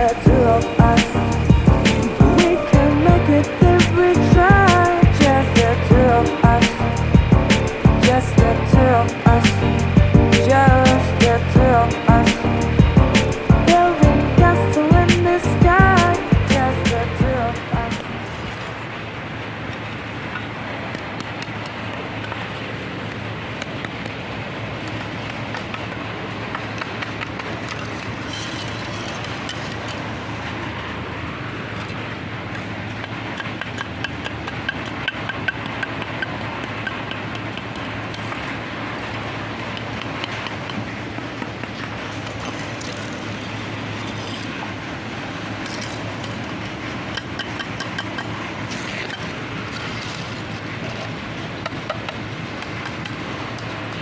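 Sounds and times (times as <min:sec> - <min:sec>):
machine humming: 0:00.0 - 0:18.8.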